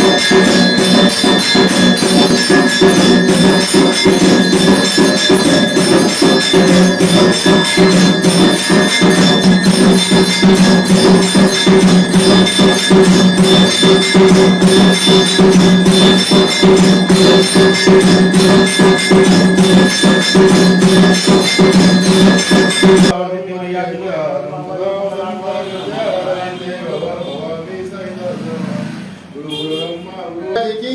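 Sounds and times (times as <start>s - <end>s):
bells and jingling metal percussion: 0.0s - 23.2s
held tones: 0.0s - 23.2s.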